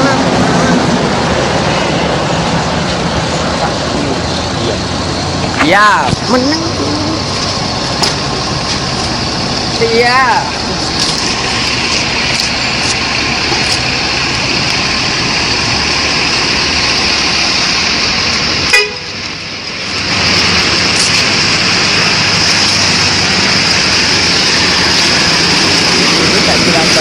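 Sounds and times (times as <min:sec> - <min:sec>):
road and engine noise: 0:00.0 - 0:27.0
bus horns tooting: 0:18.7 - 0:19.2.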